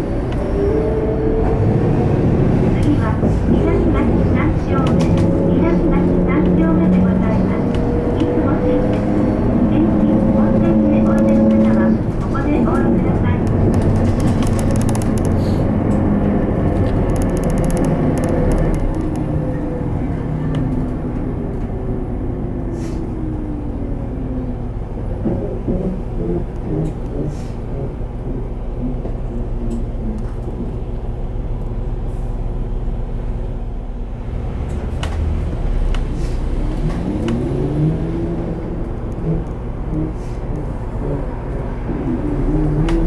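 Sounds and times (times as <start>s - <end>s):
bus drivetrain whine: 0.0s - 43.0s
road rumble: 0.0s - 43.0s.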